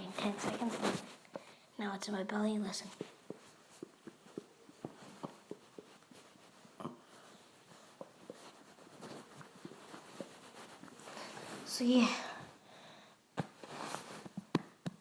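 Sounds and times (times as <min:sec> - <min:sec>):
stomach pops and gurgles: 0:03.0 - 0:07.1.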